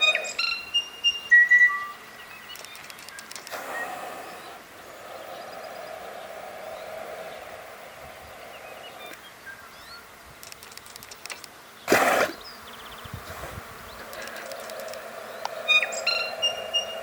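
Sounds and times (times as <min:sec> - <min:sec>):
elephant seal snoring drone: 0:03.5 - 0:09.2.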